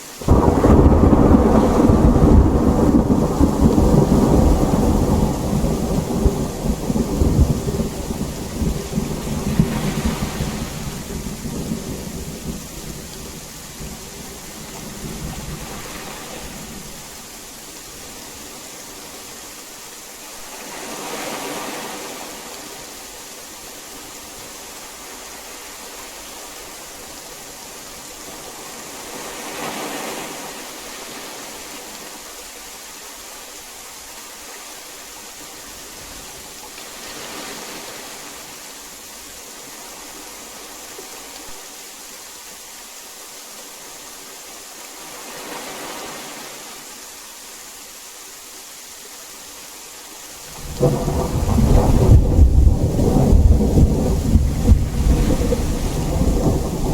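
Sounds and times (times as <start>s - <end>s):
heavy rain hissing: 0.0s - 56.9s
thunder rumbling: 0.2s - 17.0s, 50.5s - 56.9s.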